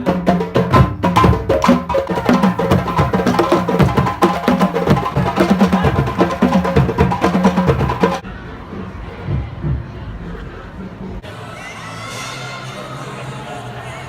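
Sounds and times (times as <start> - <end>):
drums: 0.0 - 11.5
wood-block clicking beat: 0.8 - 8.2.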